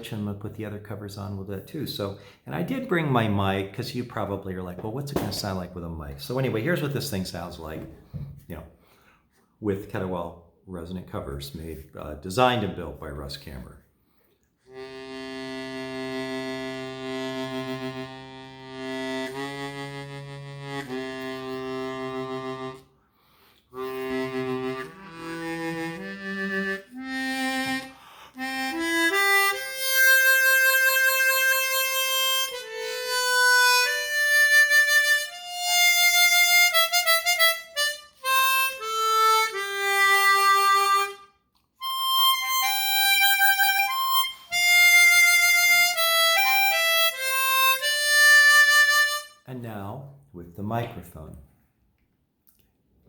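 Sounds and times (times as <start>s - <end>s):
harmonica playing: 14.6s - 49.5s.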